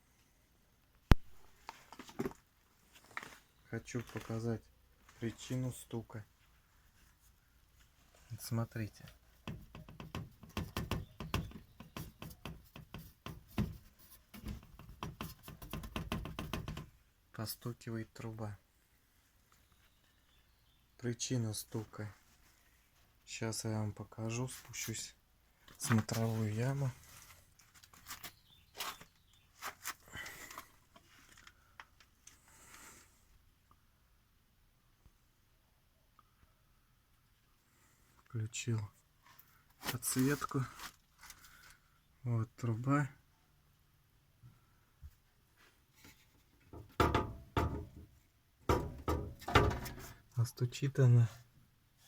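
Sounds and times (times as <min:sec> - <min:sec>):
faint footsteps and scuffs: 0:25.7 - 0:30.7
exhaust pipe knocking: 0:48.7 - 0:49.9.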